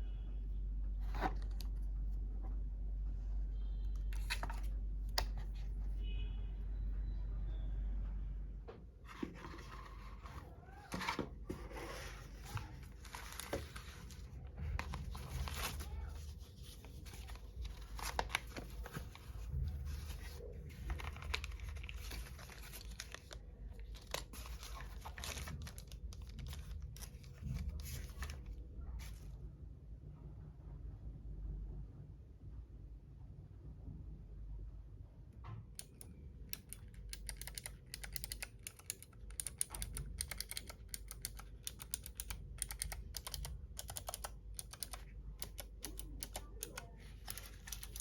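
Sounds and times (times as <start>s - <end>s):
packaging crinkling and tearing: 12.4s - 28.4s.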